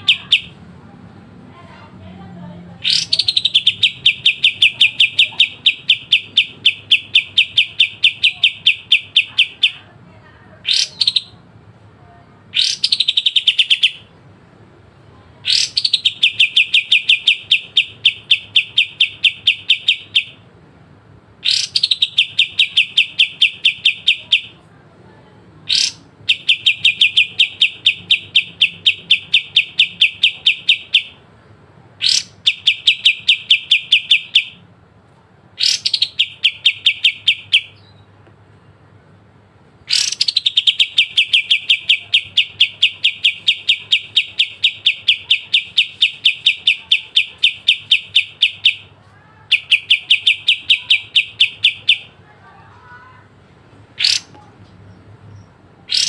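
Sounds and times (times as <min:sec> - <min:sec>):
bird singing rapid trills: 0:00.0 - 0:00.6, 0:02.8 - 0:09.8, 0:10.6 - 0:11.4, 0:12.5 - 0:14.1, 0:15.4 - 0:20.4, 0:21.4 - 0:24.6, 0:25.7 - 0:31.2, 0:32.0 - 0:34.6, 0:35.6 - 0:38.1, 0:39.9 - 0:48.9, 0:49.5 - 0:52.2, 0:54.0 - 0:56.0.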